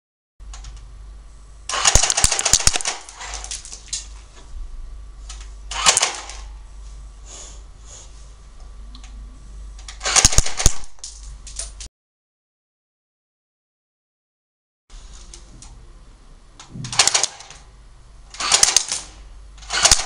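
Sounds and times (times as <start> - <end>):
steady electrical hum: 0.4 - 11.9, 14.9 - 20.0
airsoft gun firing bursts: 1.7 - 3.5, 5.7 - 6.5, 10.0 - 10.9, 16.9 - 17.5, 18.4 - 19.1, 19.7 - 20.0.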